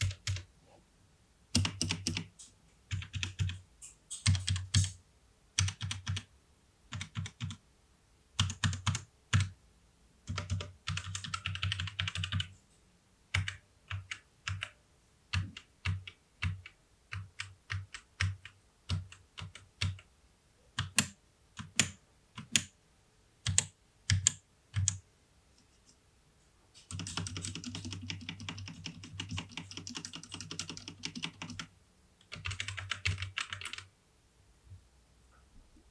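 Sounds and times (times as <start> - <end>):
mechanical keyboard typing: 0.0 - 0.5, 1.5 - 5.0, 5.6 - 6.3, 6.9 - 7.6, 8.4 - 9.6, 10.3 - 12.5, 13.3 - 20.1, 20.8 - 22.7, 23.4 - 25.0, 26.8 - 33.9.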